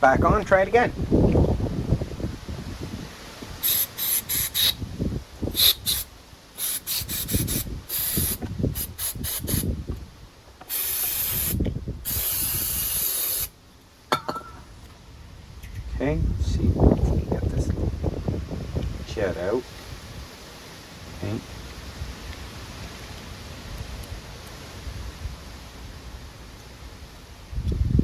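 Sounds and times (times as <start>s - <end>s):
aerosol spray hissing: 3.6s - 4.8s, 5.5s - 9.7s, 10.6s - 13.5s.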